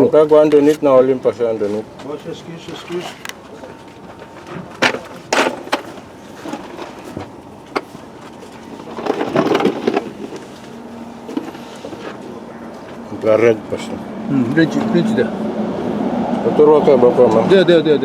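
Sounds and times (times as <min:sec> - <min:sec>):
rattling clatter: 0:02.8 - 0:12.3
sharp knocks and clatters: 0:03.0 - 0:10.6.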